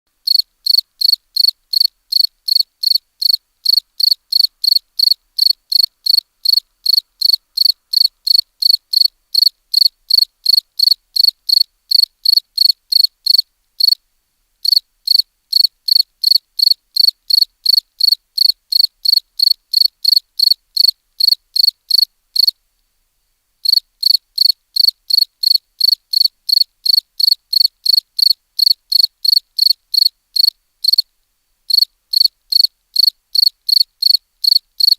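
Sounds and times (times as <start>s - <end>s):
cricket chirping: 0.2s - 14.0s, 14.6s - 22.6s, 23.6s - 31.1s, 31.7s - 34.9s.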